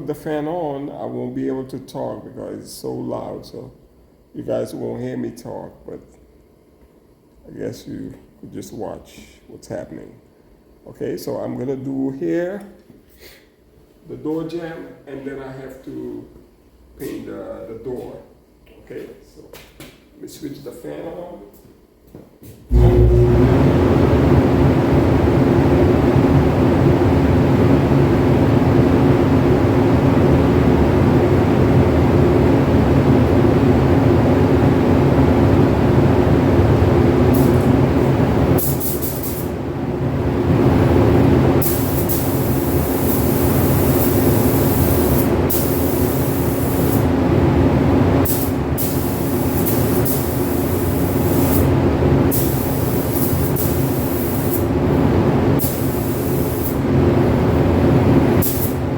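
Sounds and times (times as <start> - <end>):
fan running: 0.0 - 58.9
paint spray gun hissing: 38.6 - 39.5, 41.6 - 47.1, 48.2 - 54.7, 55.6 - 56.8, 58.4 - 58.8.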